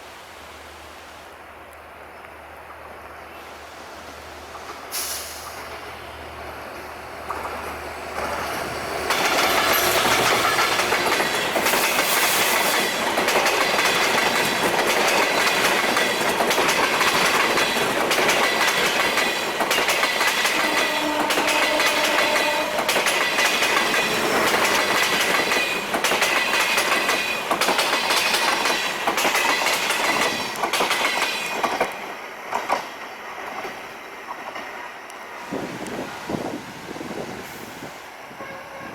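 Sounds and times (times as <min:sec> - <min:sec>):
train wheels clattering over rails: 0:07.2 - 0:37.9.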